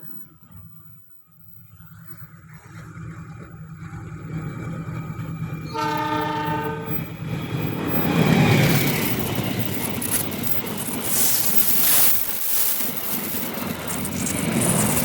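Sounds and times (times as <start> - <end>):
train rumble: 0.3 - 15.0
train horn blast: 5.7 - 7.1.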